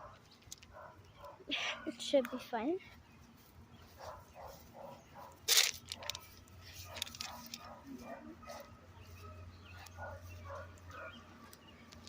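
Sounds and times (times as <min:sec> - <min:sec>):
dog barking: 0:00.0 - 0:02.4, 0:04.0 - 0:05.4, 0:06.0 - 0:11.2.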